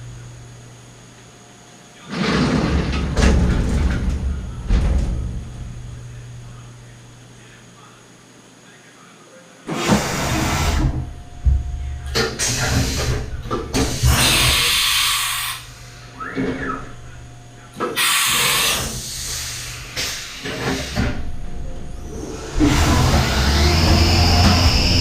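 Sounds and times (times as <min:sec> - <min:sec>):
milling machine hum: 0:00.0 - 0:25.0
loud machining noise bursts: 0:12.4 - 0:15.8, 0:17.9 - 0:21.1, 0:22.0 - 0:25.0.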